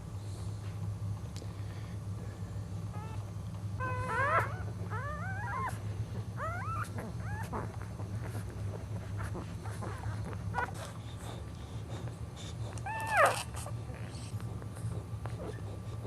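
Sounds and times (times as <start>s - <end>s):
steady low hum: 0.0s - 16.0s
puppies squealing: 3.8s - 5.8s, 6.4s - 8.4s, 12.8s - 14.4s.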